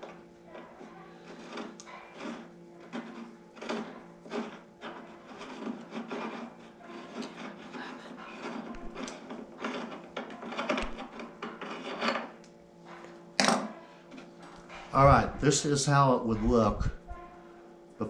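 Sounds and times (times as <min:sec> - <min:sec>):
metal parts scraping and clicking: 0:01.2 - 0:12.5.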